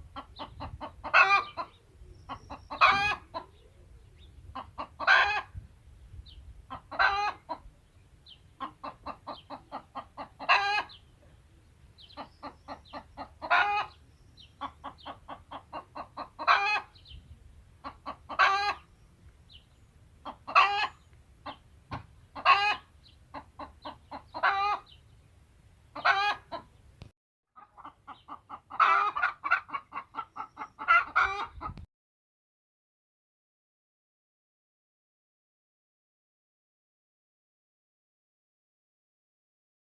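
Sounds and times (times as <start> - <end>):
hen cackling: 0.0 - 5.6, 6.7 - 7.7, 8.6 - 11.0, 12.1 - 14.0, 14.6 - 17.0, 17.8 - 18.9, 20.2 - 25.0, 26.0 - 26.7, 27.6 - 31.8.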